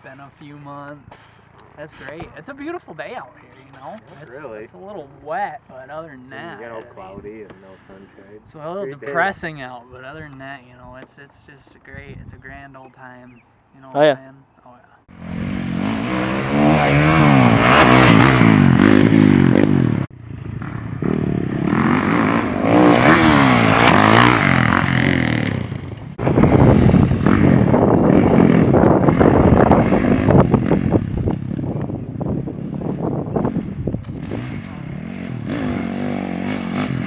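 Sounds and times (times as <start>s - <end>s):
dirt bike engine revving: 15.1s - 37.0s.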